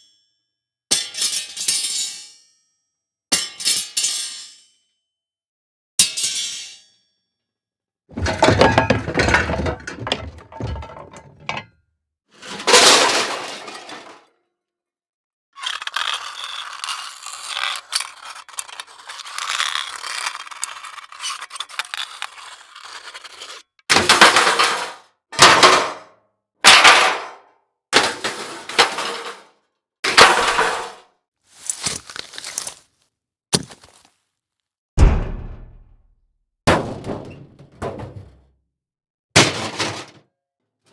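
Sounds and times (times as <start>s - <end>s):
high clattering scrape: 8.1s - 11.6s
heavy crash with debris: 8.2s - 11.6s, 35.0s - 36.0s
short hits: 35.0s - 36.1s.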